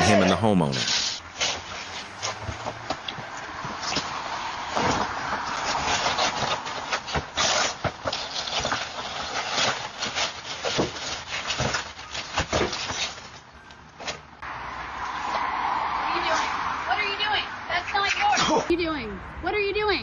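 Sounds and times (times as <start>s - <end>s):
packages handled with thuds: 4.7s - 14.3s.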